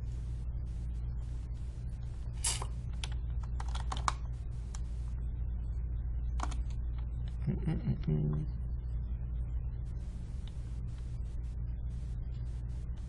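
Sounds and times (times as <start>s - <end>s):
steady low hum: 0.0s - 13.0s
keyboard and mouse clicks: 2.9s - 4.2s, 6.4s - 7.4s.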